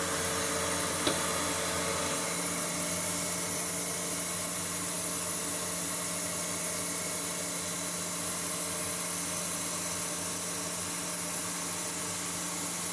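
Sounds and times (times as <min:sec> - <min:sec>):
electric motor humming: 0:00.0 - 0:04.8.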